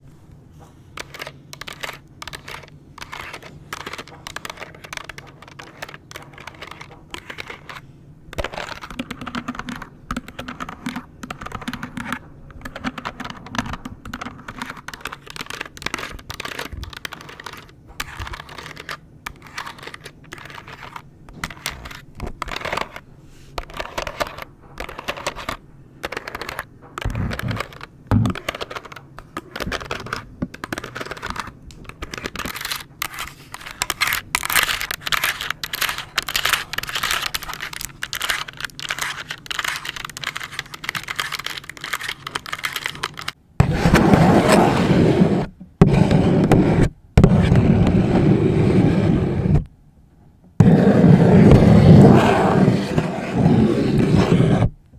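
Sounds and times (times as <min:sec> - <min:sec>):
nails tapping calculator keys: 0:00.6 - 0:43.4.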